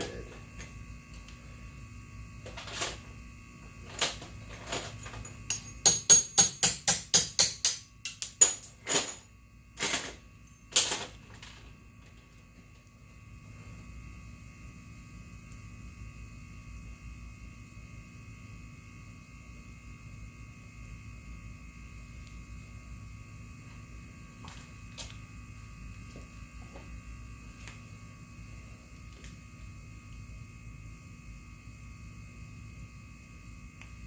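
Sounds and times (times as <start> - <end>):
electrical hum: 0.0 - 34.0.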